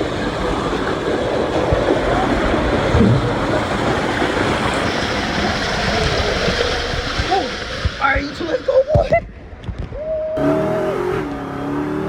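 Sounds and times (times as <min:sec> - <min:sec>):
wind buffeting microphone: 0:00.0 - 0:10.2
rushing water: 0:00.0 - 0:10.5.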